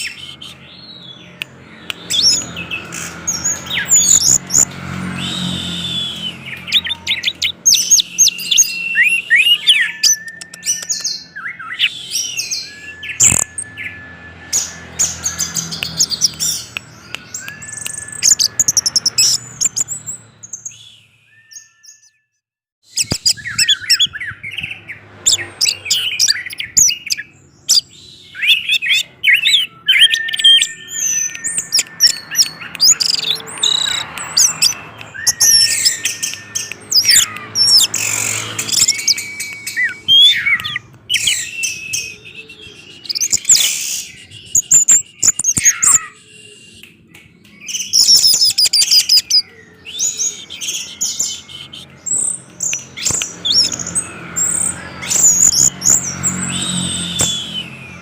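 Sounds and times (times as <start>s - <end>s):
thrush singing: 27.8s - 58.0s.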